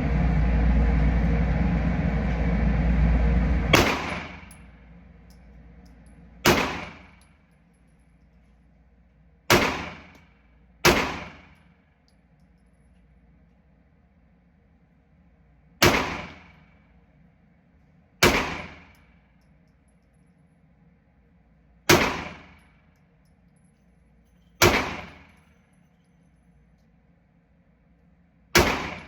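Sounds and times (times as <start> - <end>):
gunshot echo: 3.8 - 4.5, 6.5 - 7.1, 9.5 - 10.1, 10.8 - 11.5, 15.8 - 16.5, 18.2 - 18.8, 21.9 - 22.6, 24.6 - 25.2, 28.6 - 29.0
pistol shots: 6.4 - 7.1, 9.5 - 10.2, 10.8 - 11.5, 15.8 - 16.5, 18.2 - 18.8, 21.9 - 22.5, 24.6 - 25.2, 28.6 - 29.0.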